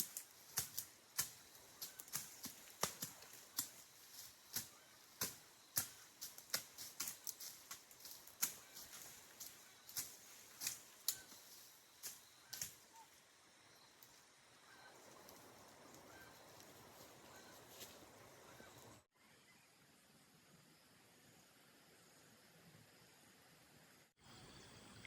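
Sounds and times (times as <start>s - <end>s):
hand tool chopping vegetation: 0.0s - 13.0s.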